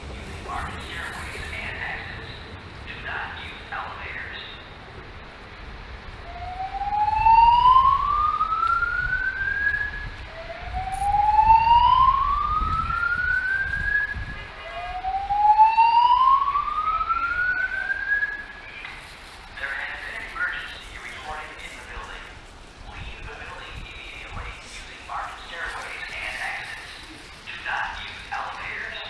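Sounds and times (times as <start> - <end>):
fire alarm whoop tone: 6.3 - 18.6.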